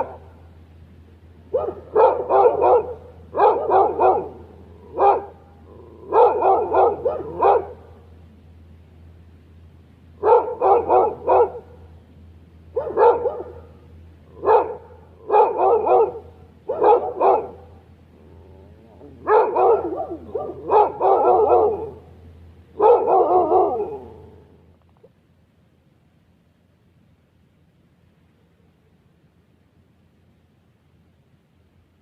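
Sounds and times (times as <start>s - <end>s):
dog barking: 1.5s - 5.4s, 6.1s - 7.9s, 10.2s - 11.8s, 12.7s - 13.8s, 14.4s - 17.8s, 19.0s - 22.1s, 22.8s - 24.3s.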